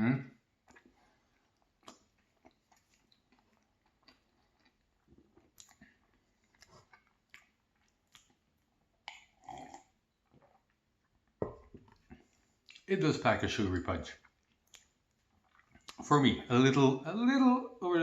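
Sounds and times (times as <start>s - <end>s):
chewing with mouth clicks: 0.6s - 12.9s, 14.2s - 16.1s.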